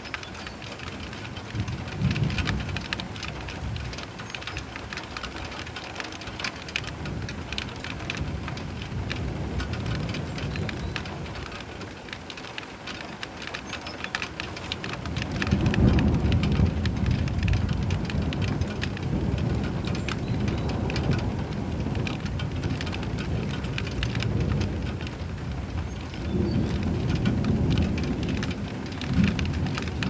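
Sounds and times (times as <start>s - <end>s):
rain pattering: 0.0s - 30.0s
rolling thunder: 1.5s - 4.2s, 6.9s - 11.6s, 14.8s - 30.0s.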